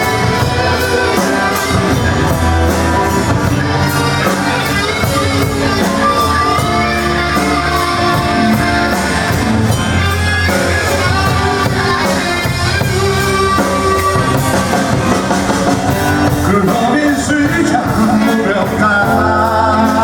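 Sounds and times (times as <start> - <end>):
bass guitar: 0.0 - 20.0
rock guitar melody: 0.0 - 20.0
steady drum beat: 0.0 - 20.0.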